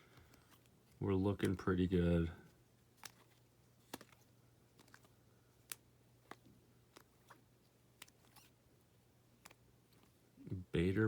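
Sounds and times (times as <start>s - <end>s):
trading cards clicking: 3.0s - 8.5s.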